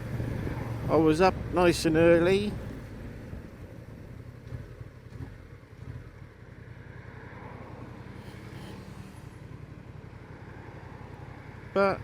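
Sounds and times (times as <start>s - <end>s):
motorcycle engine rumbling: 0.0s - 12.0s.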